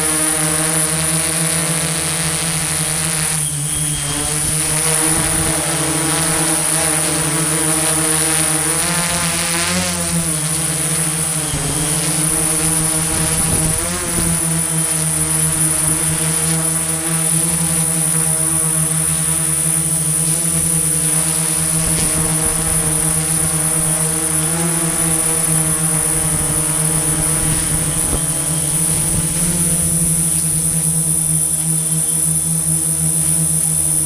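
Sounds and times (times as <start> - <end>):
machinery engine running: 0.0 - 34.0.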